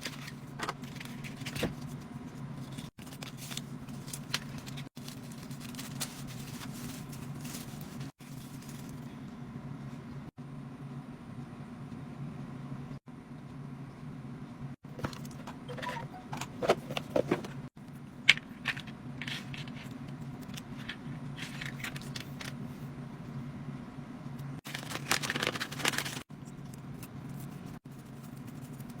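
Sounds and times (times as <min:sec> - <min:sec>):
charger and packaging handled: 0:00.0 - 0:09.1, 0:24.6 - 0:29.0
steady low hum: 0:00.0 - 0:25.2.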